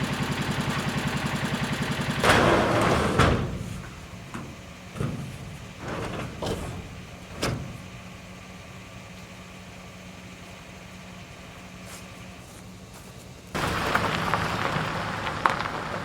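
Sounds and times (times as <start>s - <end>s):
vehicle engine idling: 0.0s - 16.0s
knocks and clunks: 2.2s - 8.2s.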